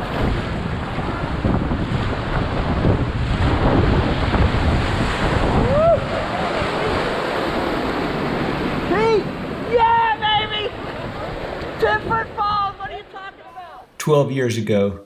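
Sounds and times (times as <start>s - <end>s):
wind buffeting microphone: 0.0s - 13.4s
rushing whitewater: 5.2s - 12.1s.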